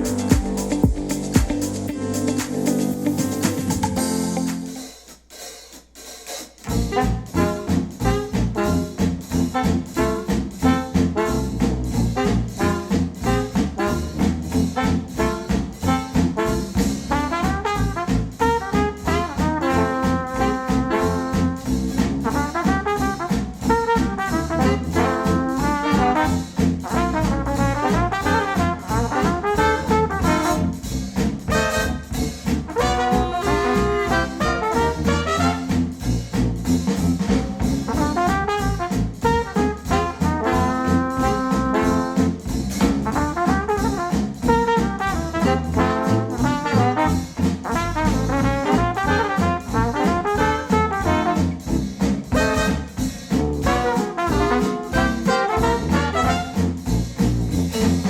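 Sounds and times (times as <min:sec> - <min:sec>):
brass-led jazzy instrumental music: 0:00.0 - 0:58.0
steady drum beat: 0:00.0 - 0:58.0.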